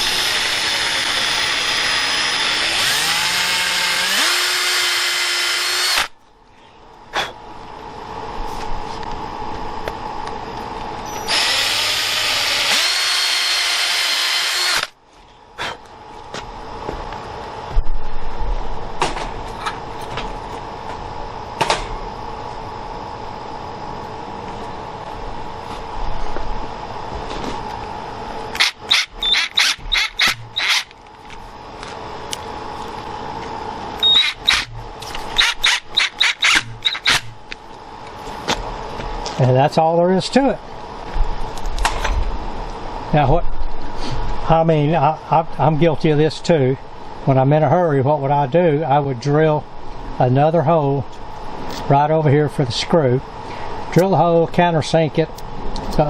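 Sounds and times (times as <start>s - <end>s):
power drill drilling into wood: 0.0s - 6.1s, 11.3s - 14.9s, 28.6s - 30.9s, 35.4s - 37.3s
steady hum: 0.0s - 56.0s.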